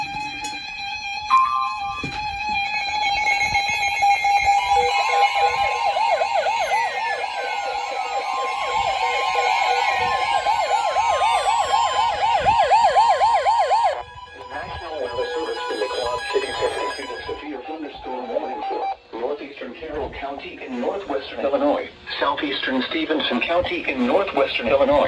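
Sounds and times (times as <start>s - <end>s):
high warning tone: 0.0s - 19.3s
electronic siren yelping: 0.4s - 19.1s
radio alert tones: 4.8s - 19.2s.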